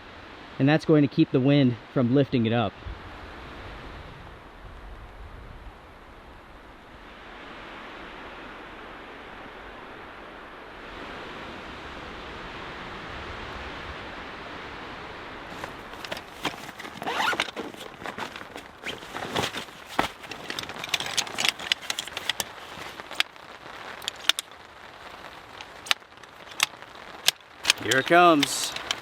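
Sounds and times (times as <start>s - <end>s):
rain: 0.0s - 2.0s, 2.7s - 29.0s
wind: 0.0s - 29.0s
sharp taps crackles and scrapes: 15.5s - 29.0s.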